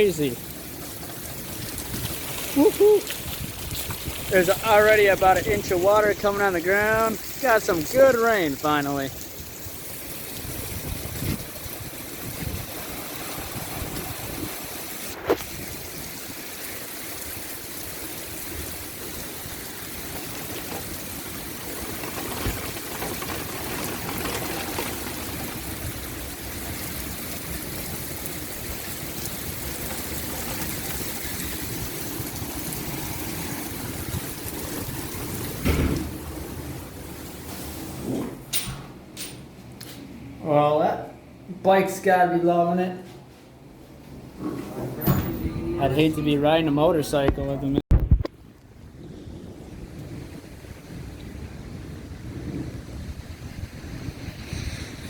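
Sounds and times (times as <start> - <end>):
water splashing on ground: 0.0 - 37.5
heavy rain hissing: 0.0 - 38.1.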